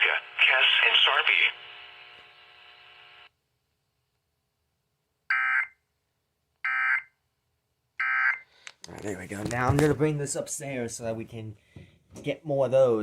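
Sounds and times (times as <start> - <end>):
faint radio hum: 0.0 - 3.3.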